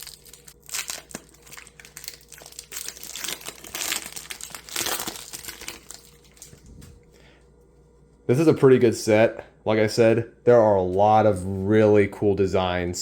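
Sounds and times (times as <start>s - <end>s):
foil wrapper crinkling: 0.0s - 7.0s.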